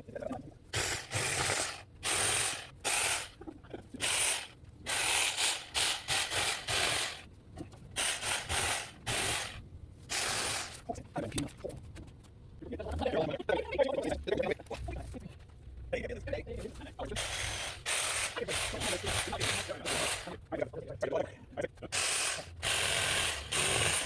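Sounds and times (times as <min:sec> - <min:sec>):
reciprocating saw cutting branches: 0:00.8 - 0:03.4, 0:04.0 - 0:07.3, 0:08.0 - 0:10.8, 0:17.2 - 0:20.4, 0:22.0 - 0:24.0.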